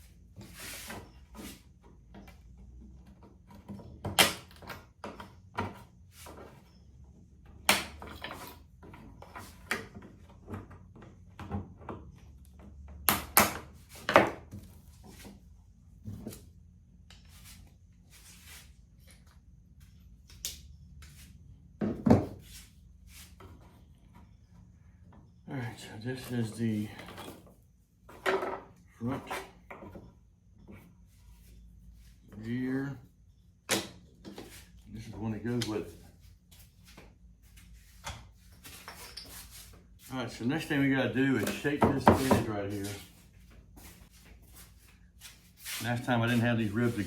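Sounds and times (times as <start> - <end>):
wooden pieces knocking on workbench: 41.4 - 42.5.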